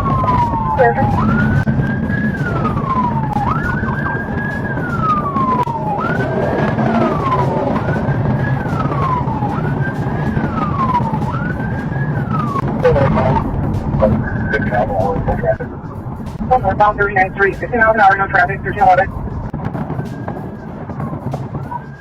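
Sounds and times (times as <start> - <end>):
low rumble: 0.0 - 6.1, 10.4 - 19.7
police siren wailing: 0.0 - 22.0.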